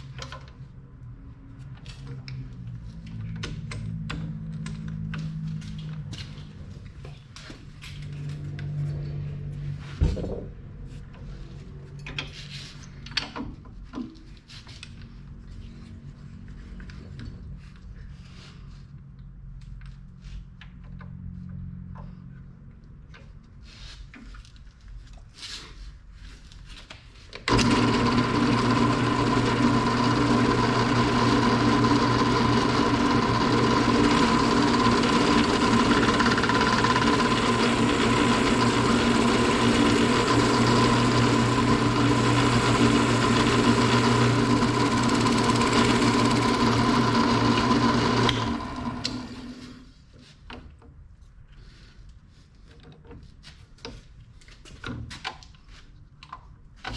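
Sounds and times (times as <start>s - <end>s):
drill press motor running: 27.5s - 49.8s.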